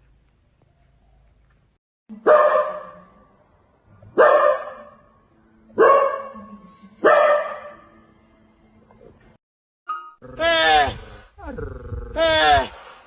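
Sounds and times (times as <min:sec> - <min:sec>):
dog barking: 0:02.3 - 0:03.1, 0:04.1 - 0:05.0, 0:05.8 - 0:06.4, 0:07.0 - 0:07.8.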